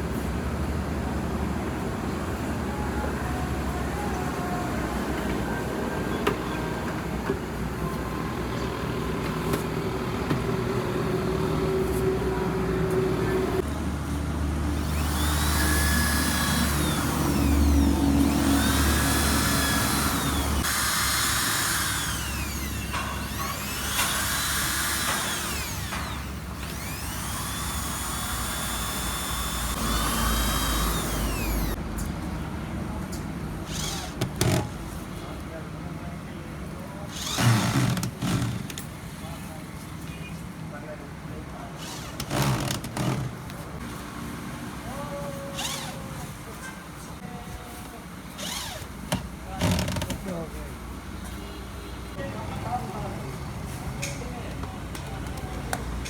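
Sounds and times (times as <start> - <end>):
electric motor whining: 14.8 - 31.8, 33.7 - 34.6, 37.1 - 38.7, 48.4 - 48.9.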